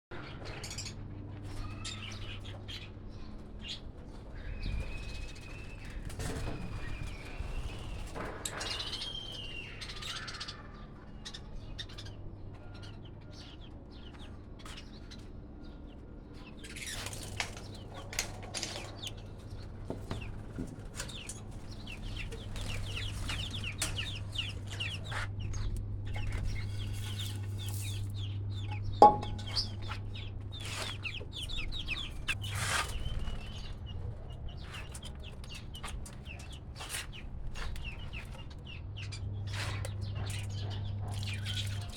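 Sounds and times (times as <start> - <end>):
birds chirping and chattering: 0.2 - 41.9
steady low hum: 11.1 - 41.9.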